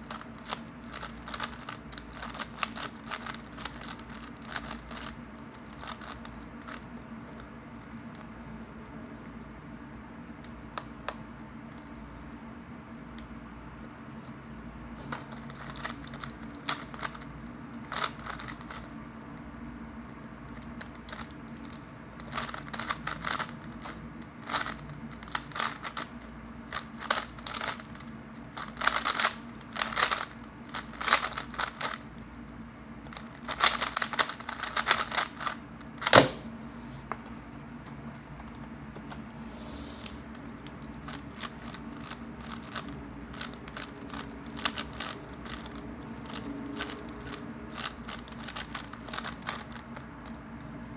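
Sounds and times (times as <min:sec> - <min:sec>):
plastic cube clicking: 0:28.6 - 0:32.0, 0:33.5 - 0:36.4, 0:47.8 - 0:49.8
sharp knock: 0:36.1 - 0:36.5.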